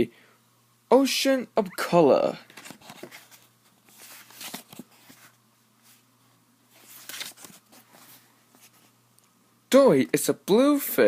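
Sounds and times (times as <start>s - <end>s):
book pages rustling: 2.5s - 6.0s, 6.7s - 8.9s.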